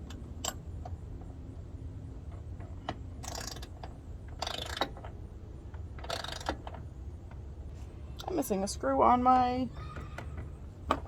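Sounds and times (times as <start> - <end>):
steady low hum: 0.0 - 11.0
ratchet rattling: 2.3 - 5.2, 5.8 - 6.9.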